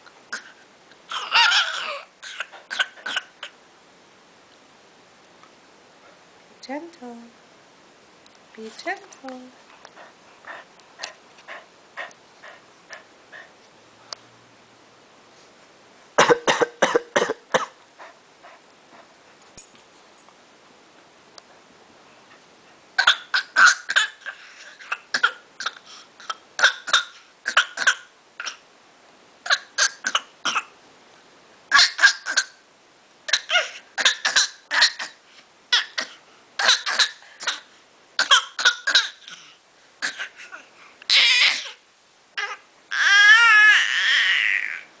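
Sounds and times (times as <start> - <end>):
child wavering cry: 1.1 - 2.1, 40.5 - 41.8, 42.4 - 45.0
child pretend coughing: 16.2 - 17.8, 35.8 - 40.7.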